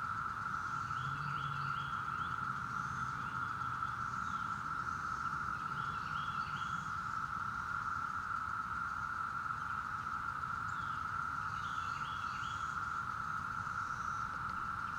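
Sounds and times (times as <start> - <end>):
cicada chorus drone: 0.0 - 14.9.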